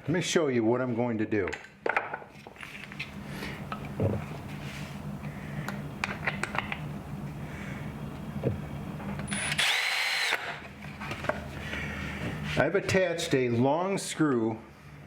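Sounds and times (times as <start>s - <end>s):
cordless drill driving screw: 9.2s - 10.6s.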